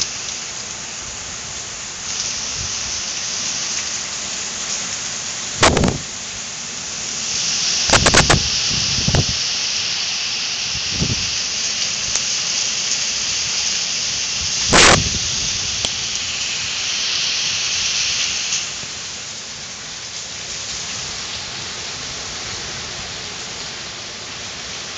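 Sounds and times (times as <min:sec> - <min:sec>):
heavy rain and wind: 0:00.0 - 0:24.9
loud thumps: 0:05.6 - 0:06.0.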